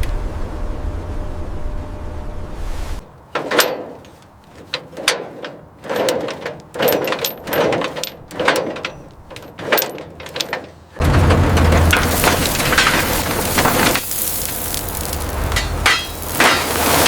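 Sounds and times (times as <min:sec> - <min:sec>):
sharp ringing knocks and clacks: 0:03.4 - 0:14.0, 0:15.5 - 0:17.0.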